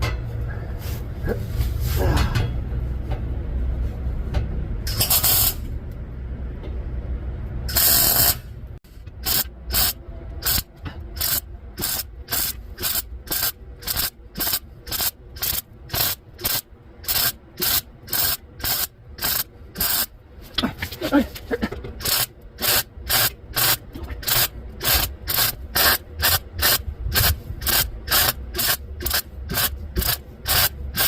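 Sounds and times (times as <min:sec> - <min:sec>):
welder arcing in short bursts: 0:04.9 - 0:05.7, 0:07.7 - 0:08.5, 0:09.2 - 0:10.6, 0:11.2 - 0:20.1, 0:22.0 - 0:31.0.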